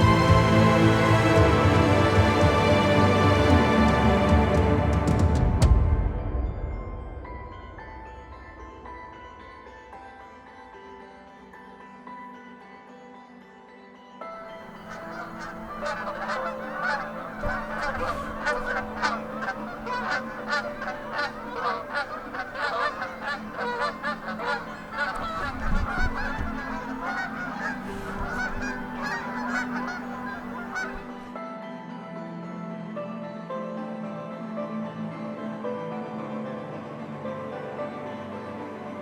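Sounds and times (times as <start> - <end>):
geese honking: 0.0 - 4.3, 14.7 - 31.3.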